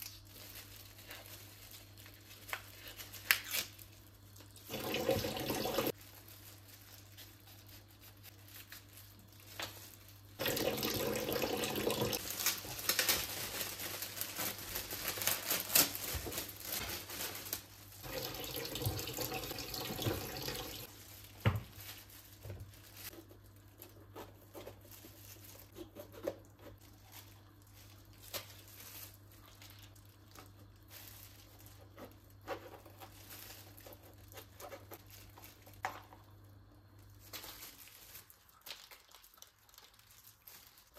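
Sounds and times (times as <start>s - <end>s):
tap running into sink: 18.1s - 20.8s.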